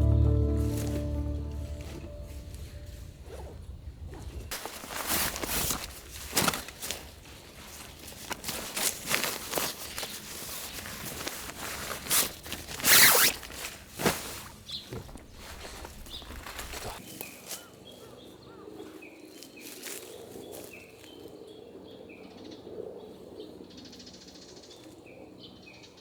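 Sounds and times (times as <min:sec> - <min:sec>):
music: 0:00.0 - 0:02.9
rustling with light knocks: 0:04.5 - 0:17.5.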